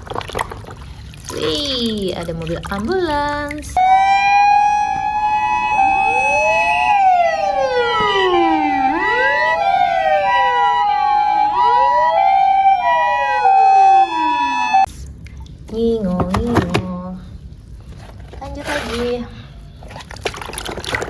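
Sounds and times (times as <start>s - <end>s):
ambulance siren: 3.8s - 14.9s.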